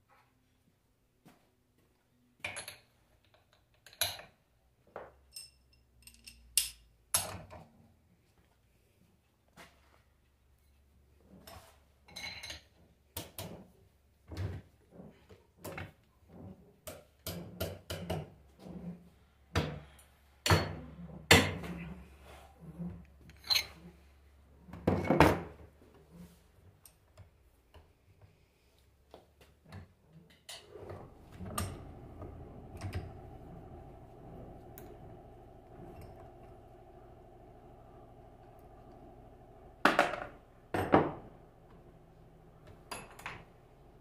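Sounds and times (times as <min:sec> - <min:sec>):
steady hum: 0:30.8 - 0:44.0.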